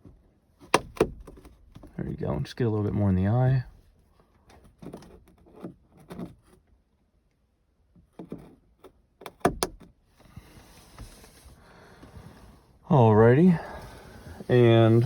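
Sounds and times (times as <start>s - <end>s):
faint steady hiss: 10.2s - 15.0s.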